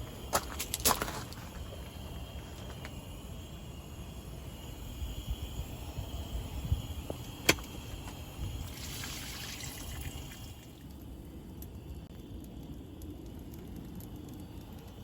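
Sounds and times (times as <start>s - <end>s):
liquid trickling: 8.6s - 11.0s.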